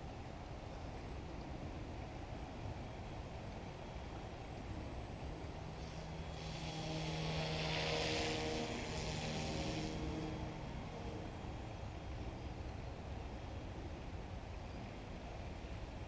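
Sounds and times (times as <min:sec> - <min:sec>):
remote-control helicopter buzzing: 0:05.8 - 0:11.3.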